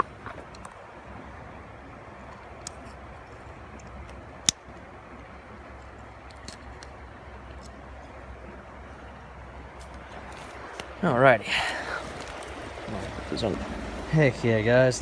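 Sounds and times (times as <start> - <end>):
flowing creek water: 0.0 - 15.0
fishing tackle clicks: 2.2 - 4.8, 5.8 - 7.8.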